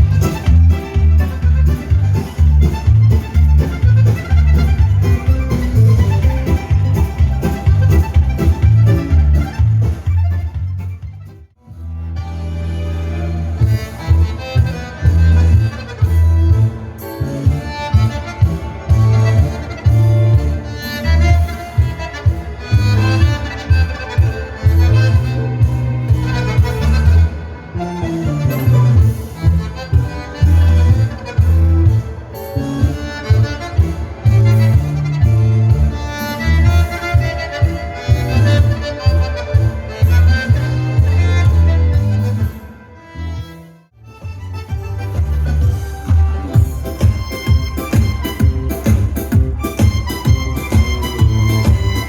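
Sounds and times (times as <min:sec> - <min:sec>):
pulsing bass line: 0:00.0 - 0:22.1, 0:22.7 - 0:42.5, 0:44.0 - 0:52.0
accordion dance music: 0:00.0 - 0:52.0
violin: 0:00.0 - 0:52.0
dance-hall music with pulsing bass: 0:44.6 - 0:52.0.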